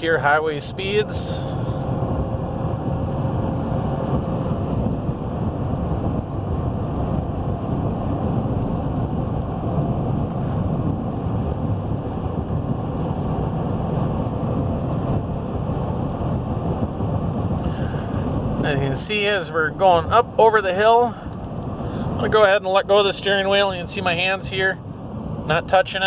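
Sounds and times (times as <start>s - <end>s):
pickup truck cabin driving noise: 0.0s - 26.0s.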